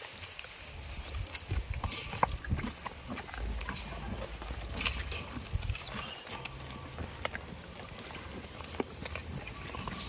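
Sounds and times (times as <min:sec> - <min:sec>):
low rumble: 0:01.0 - 0:10.0
goats knocking and clattering: 0:01.2 - 0:10.0.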